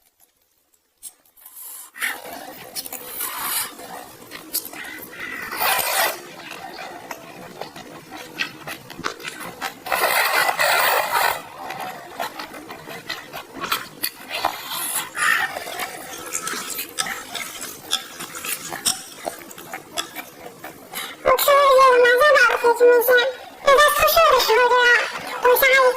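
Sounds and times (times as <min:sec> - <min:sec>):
wet chewing and smacks: 0:01.0 - 0:09.9, 0:10.6 - 0:21.2
loud noodle slurp: 0:01.4 - 0:21.2.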